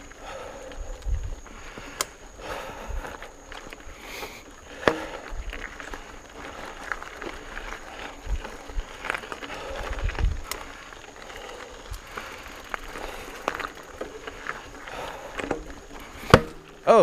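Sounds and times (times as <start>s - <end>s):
wind rumble on microphone: 0.0s - 1.8s, 8.0s - 10.6s
bike clicks and knocks: 0.0s - 3.9s, 4.6s - 17.0s
bike tyres on dirt: 0.0s - 17.0s.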